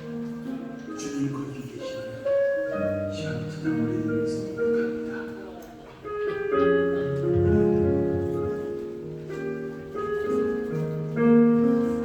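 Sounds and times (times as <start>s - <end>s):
piano playing slow chords: 0.0s - 12.0s.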